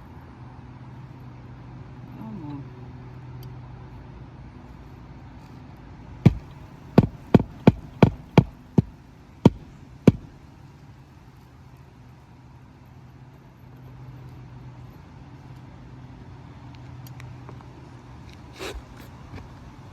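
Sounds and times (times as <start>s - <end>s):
hammer striking nails: 6.3s - 10.4s.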